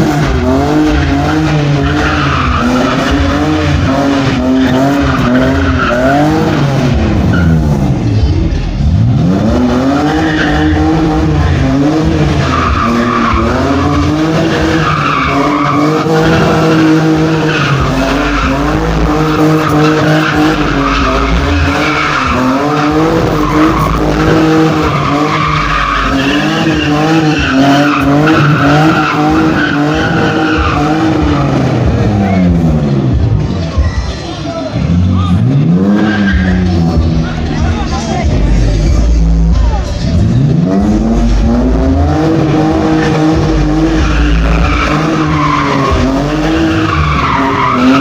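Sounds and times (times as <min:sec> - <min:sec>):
car engine revving: 0:00.0 - 0:48.0
tyres squealing: 0:09.6 - 0:31.6, 0:42.4 - 0:48.0.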